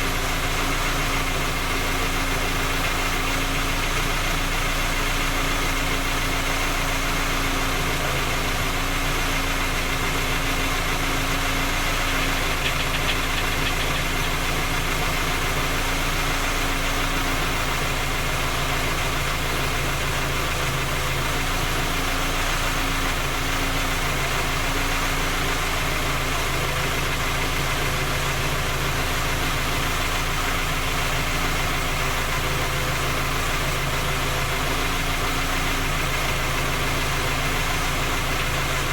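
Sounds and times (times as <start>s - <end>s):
car engine idling with a knock: 0.0s - 7.2s, 7.8s - 22.4s.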